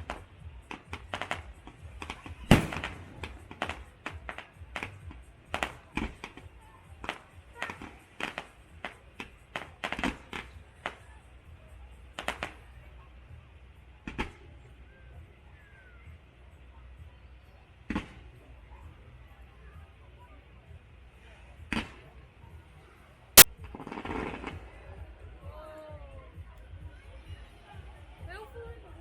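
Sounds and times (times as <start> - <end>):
fireworks bangs: 0.0 - 6.4.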